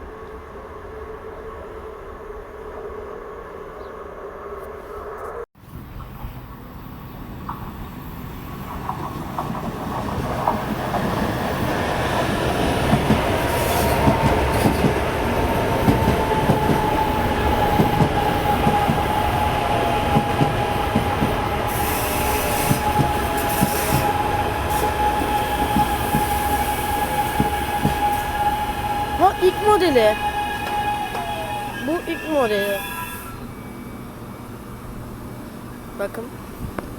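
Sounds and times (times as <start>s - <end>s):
train rolling on rails: 0.0s - 36.9s
high-pitched wheel squeal: 21.7s - 34.2s.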